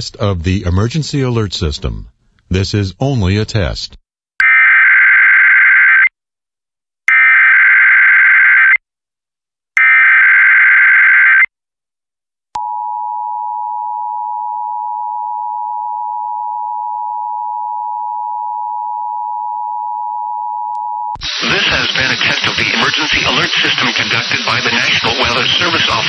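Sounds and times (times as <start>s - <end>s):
raspy data bursts: 21.2s - 26.0s.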